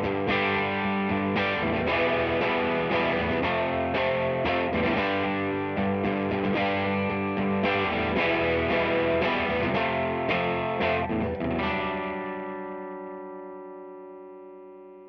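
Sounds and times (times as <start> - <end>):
overdriven electric guitar: 0.0 - 15.0.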